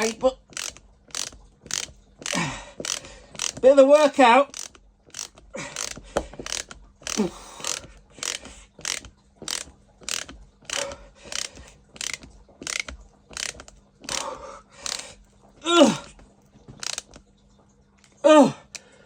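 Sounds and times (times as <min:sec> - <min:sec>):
ratchet screwdriver clicking: 0:00.0 - 0:03.6, 0:04.5 - 0:14.2, 0:14.8 - 0:15.0, 0:16.8 - 0:17.2.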